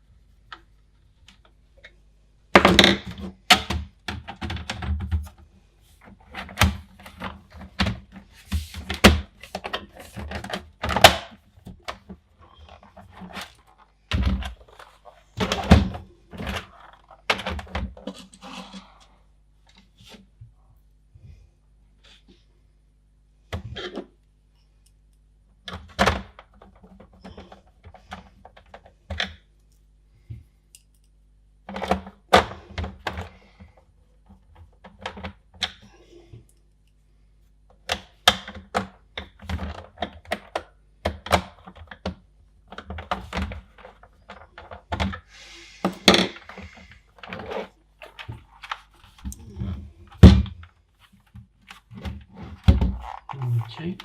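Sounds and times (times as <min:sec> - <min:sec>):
plastic parts clicking and tapping: 0:31.7 - 0:36.6, 0:37.7 - 0:49.5.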